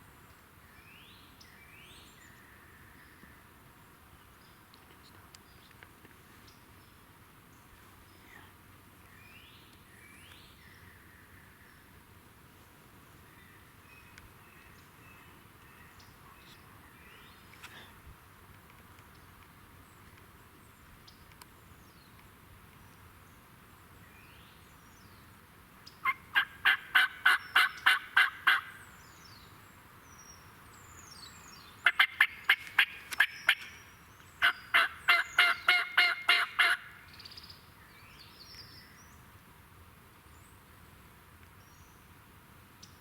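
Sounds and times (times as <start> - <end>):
small birds chirping: 13.3 - 17.8
turkey yelping: 26.0 - 28.7, 34.4 - 36.9.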